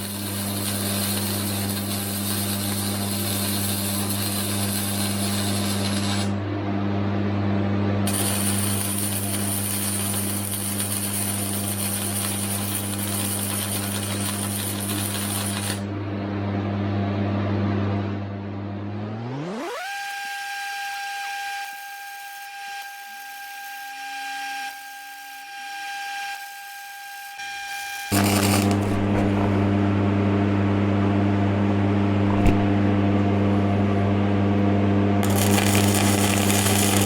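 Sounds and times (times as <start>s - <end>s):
welding arc crackling: 0.0s - 6.4s, 8.1s - 15.9s, 21.7s - 23.9s, 27.7s - 29.8s, 35.2s - 37.0s
welder hum: 0.0s - 6.5s, 8.1s - 16.6s, 18.0s - 37.0s
tone sweeping upward: 18.4s - 20.2s.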